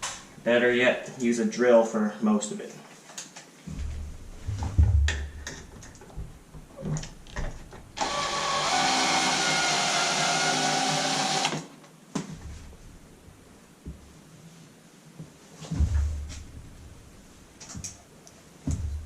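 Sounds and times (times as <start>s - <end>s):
power drill driving screw: 8.0s - 11.7s.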